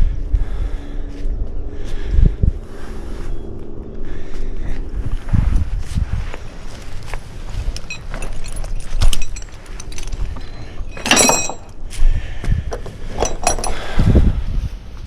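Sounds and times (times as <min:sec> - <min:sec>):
metallic clinks: 0:07.5 - 0:11.9, 0:13.1 - 0:13.9.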